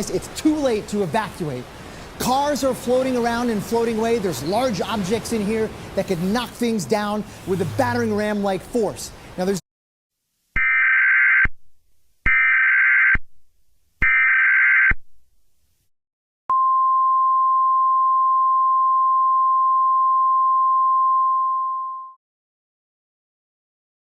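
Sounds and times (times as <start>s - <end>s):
steady attention tone: 7.2s - 8.8s.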